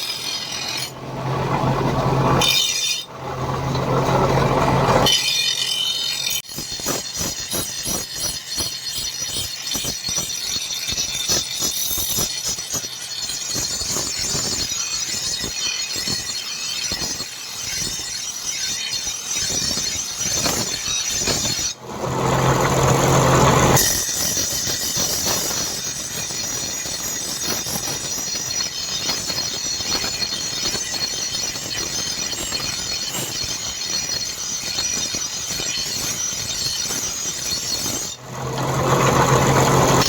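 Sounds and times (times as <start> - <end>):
repeated strokes on metal: 0.0 - 40.0
power tool running: 21.8 - 24.4, 38.1 - 40.0.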